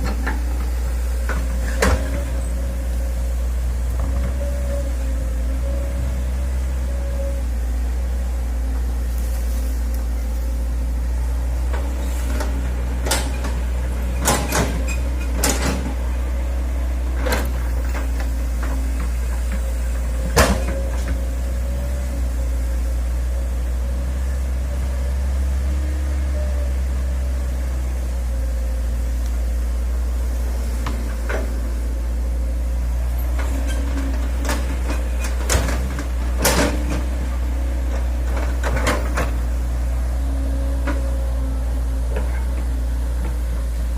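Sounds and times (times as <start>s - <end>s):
excavator diesel engine running: 0.0s - 43.9s
sharp clunks and knocks: 20.2s - 21.2s, 33.4s - 37.1s.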